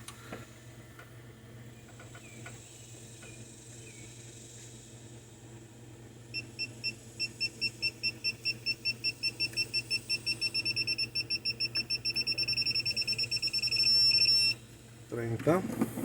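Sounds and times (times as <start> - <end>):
torque wrench beeping: 6.3 - 14.6.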